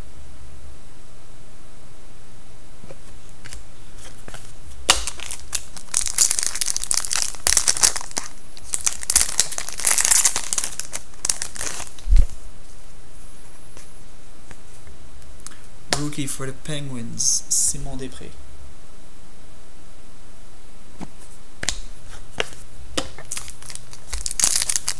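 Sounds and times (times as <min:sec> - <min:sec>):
foil wrapper crinkling and tearing: 0:04.9 - 0:12.1, 0:23.1 - 0:24.9.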